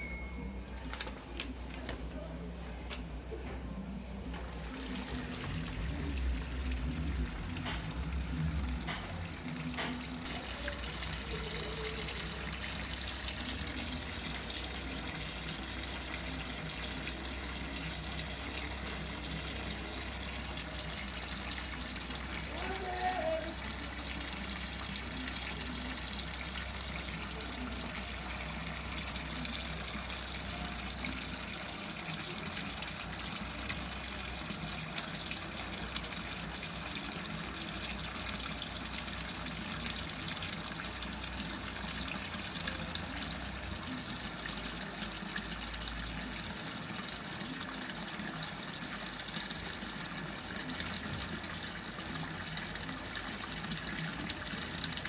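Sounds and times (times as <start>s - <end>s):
low machine hum: 0.0s - 38.6s
water rushing in washing machine: 4.3s - 55.0s.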